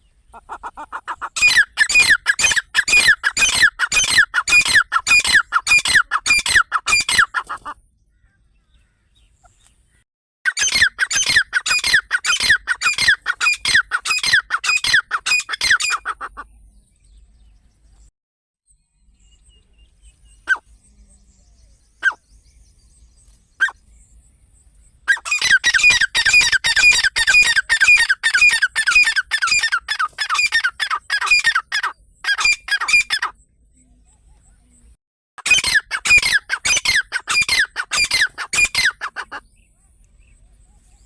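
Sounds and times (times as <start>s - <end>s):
partridge calling: 0.0s - 9.7s, 10.5s - 16.6s, 22.0s - 22.2s, 25.1s - 33.4s, 35.4s - 39.6s.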